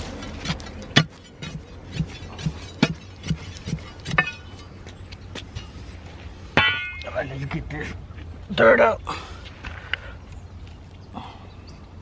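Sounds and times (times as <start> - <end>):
loud metallic clink: 6.6 - 7.2.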